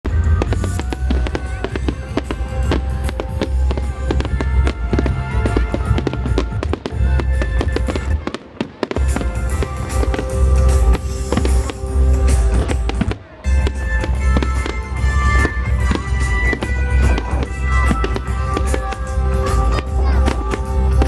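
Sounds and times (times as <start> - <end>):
music with heavy bass: 0.0 - 8.3, 8.9 - 21.0
fireworks crackling and banging: 0.0 - 21.0.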